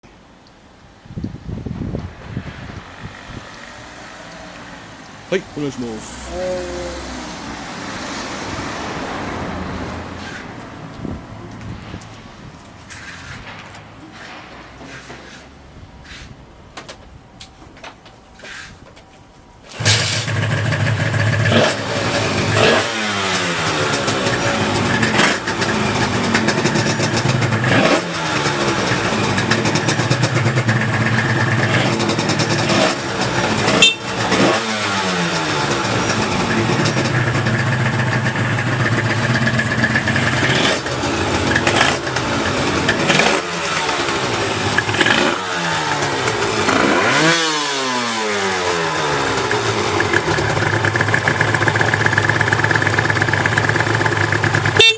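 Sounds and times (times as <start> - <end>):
motorcycle kick start: 19.7 - 48.2, 48.9 - 54.9
motorcycle engine revving: 19.7 - 54.9.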